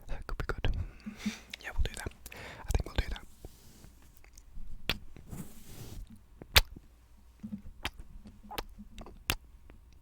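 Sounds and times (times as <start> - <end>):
wet mouth clicks and pops: 4.2 - 5.0, 6.4 - 6.8, 7.5 - 10.0.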